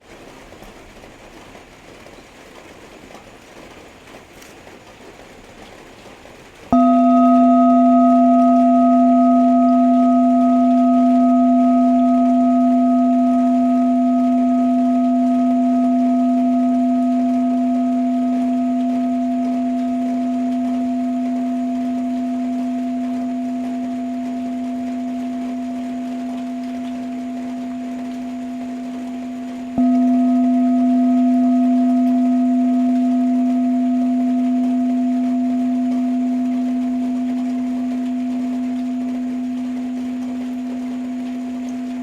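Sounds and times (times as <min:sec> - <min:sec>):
steady rain hiss: 0:00.0 - 0:42.0
singing bowl ringing: 0:06.7 - 0:42.0.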